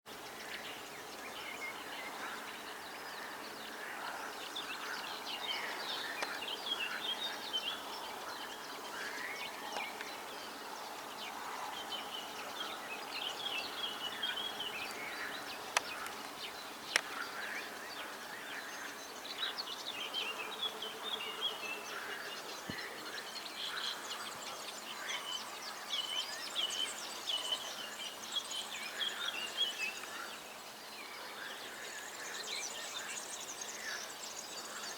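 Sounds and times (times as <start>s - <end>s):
outdoor background: 0.1s - 34.9s.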